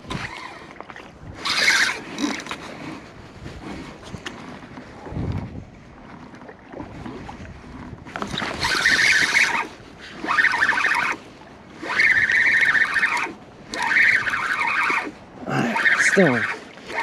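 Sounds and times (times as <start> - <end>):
fishing reel cranking: 1.4 - 3.0, 8.3 - 11.2, 11.8 - 17.0.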